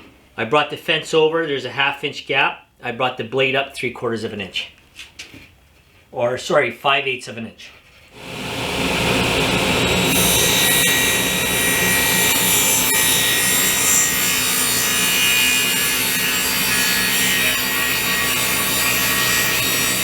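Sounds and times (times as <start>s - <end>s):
table saw cutting panel: 8.2s - 20.0s.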